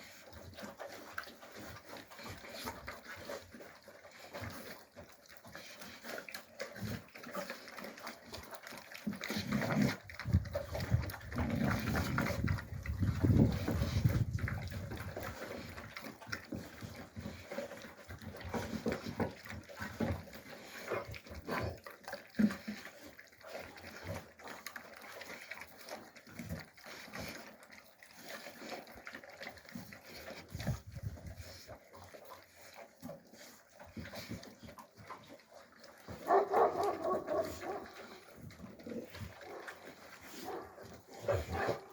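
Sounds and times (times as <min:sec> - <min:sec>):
puppies grunting: 0:36.1 - 0:41.9.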